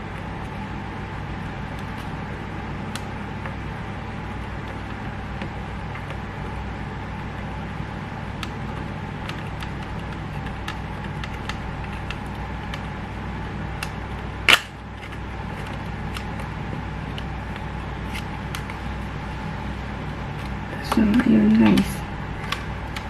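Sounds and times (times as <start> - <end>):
steady low hum: 0.0 - 23.0
loud sharp plastic snap: 14.5 - 14.8.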